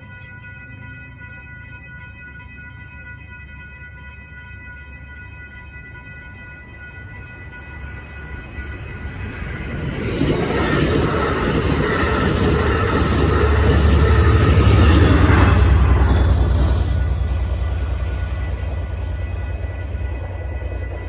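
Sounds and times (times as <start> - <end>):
passenger train passing: 5.0 - 21.0
wheels rumbling on rail: 7.0 - 21.0.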